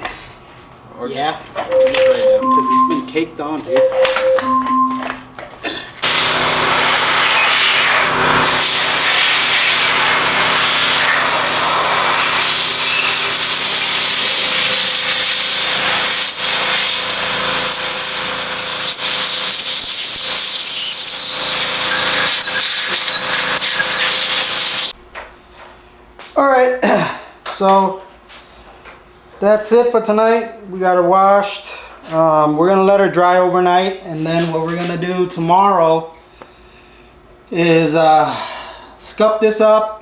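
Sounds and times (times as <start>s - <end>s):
water spray hissing: 6.0s - 24.9s.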